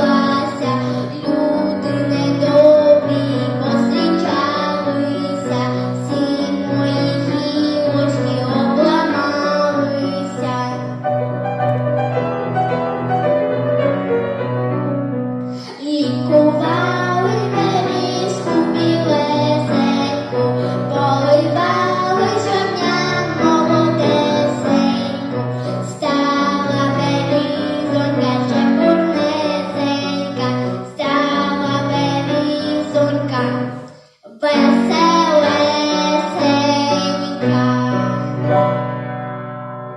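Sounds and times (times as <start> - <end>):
girl singing a folk song: 0.0 - 11.0, 15.5 - 38.8
instrumental accompaniment: 0.0 - 39.9.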